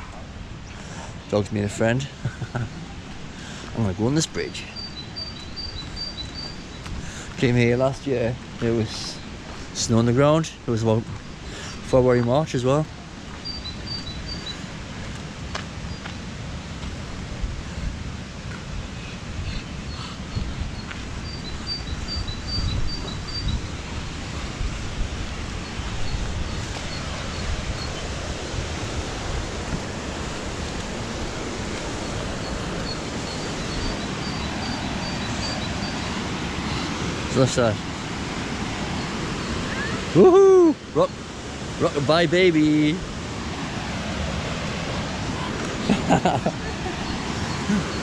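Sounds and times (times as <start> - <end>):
waterfall roaring: 0.0 - 48.0
high bird chirps: 4.4 - 6.9, 13.4 - 14.7, 19.5 - 23.8, 32.0 - 36.9, 38.9 - 40.2.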